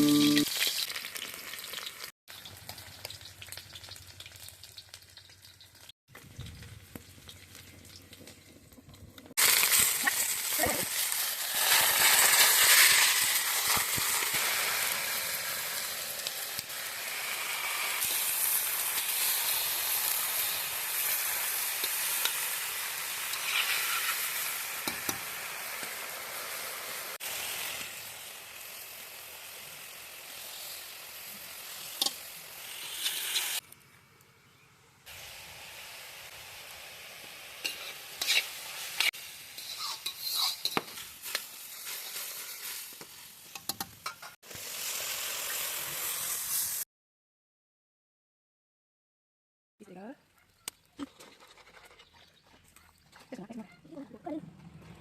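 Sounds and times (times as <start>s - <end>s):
food sizzling in a pan: 0.0s - 8.4s, 9.3s - 33.6s, 35.1s - 46.8s
stirring in a pan: 37.6s - 44.4s.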